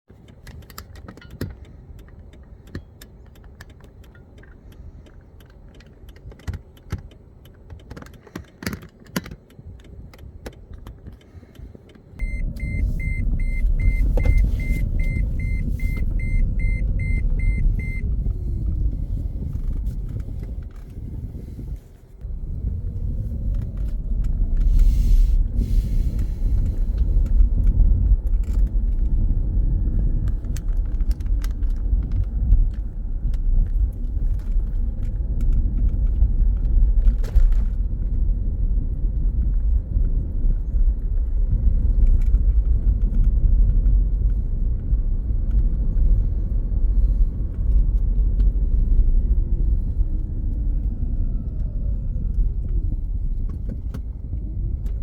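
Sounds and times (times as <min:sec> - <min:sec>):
vehicle engine rumble: 0:00.0 - 0:55.0
clicks and knocks of handling: 0:00.2 - 0:12.1.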